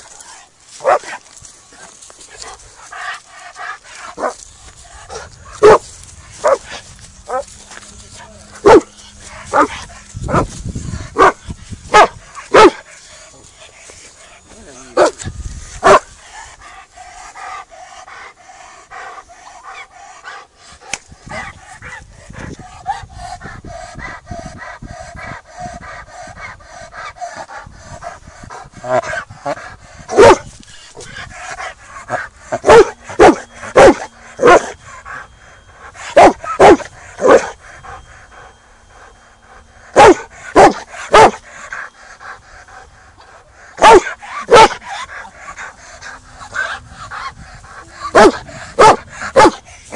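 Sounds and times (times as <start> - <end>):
dog barking: 0.8 - 1.1, 5.6 - 5.8, 6.4 - 6.6, 8.6 - 8.9, 11.2 - 12.8, 15.8 - 16.1, 30.1 - 30.5, 32.5 - 34.7, 36.2 - 37.5, 40.0 - 41.4, 43.8 - 45.0, 48.0 - 49.6.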